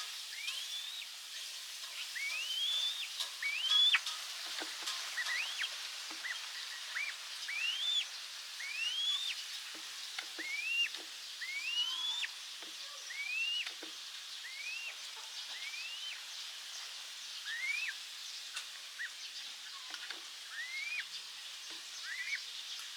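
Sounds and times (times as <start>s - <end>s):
background hiss: 0.0s - 22.9s
bird whistled calls: 0.3s - 1.1s, 2.0s - 4.0s, 5.2s - 9.4s, 10.4s - 12.4s, 13.0s - 13.8s, 14.4s - 16.3s, 17.4s - 18.0s, 19.0s - 21.1s, 22.0s - 22.4s.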